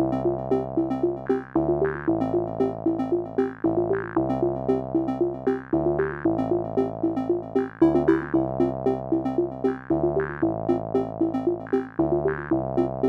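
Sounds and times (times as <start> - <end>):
bass line: 0.0 - 13.0
synthesizer tune: 0.6 - 12.8.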